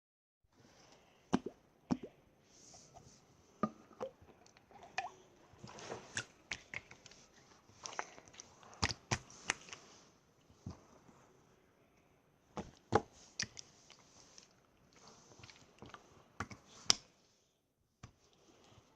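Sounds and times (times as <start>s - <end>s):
slime squished by hand: 7.8s - 9.9s.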